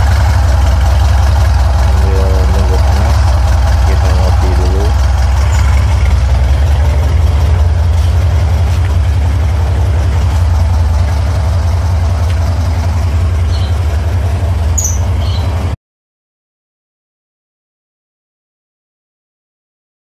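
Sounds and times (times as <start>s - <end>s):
car engine idling: 0.0s - 15.8s.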